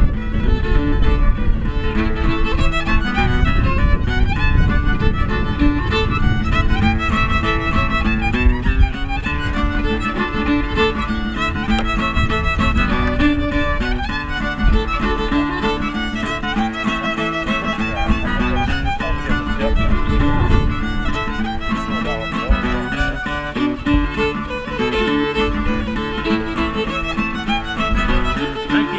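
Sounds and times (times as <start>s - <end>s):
fiddle music: 0.0s - 28.9s
guitar accompaniment: 0.0s - 28.9s.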